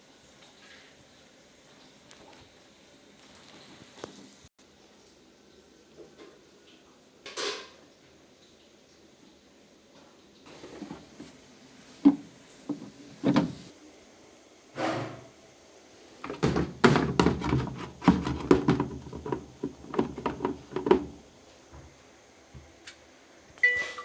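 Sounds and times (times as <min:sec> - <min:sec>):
hard objects knocking: 0:12.0 - 0:13.7, 0:16.2 - 0:21.2.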